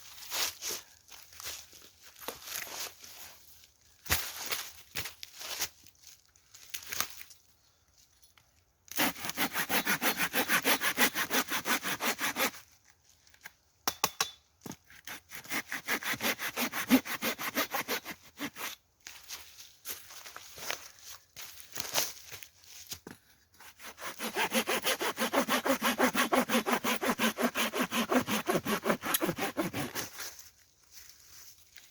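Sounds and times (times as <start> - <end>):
hand saw cutting wood: 8.9 - 12.6, 14.9 - 18.8, 23.6 - 30.2.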